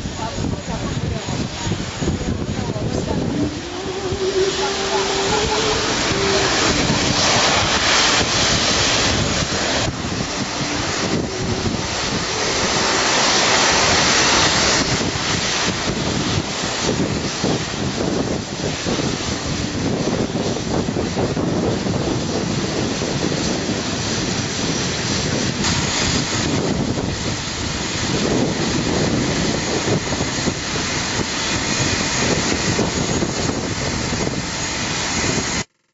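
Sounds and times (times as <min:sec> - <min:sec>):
rushing jet engine noise: 0:00.0 - 0:35.7
wind buffeting microphone: 0:00.0 - 0:35.7.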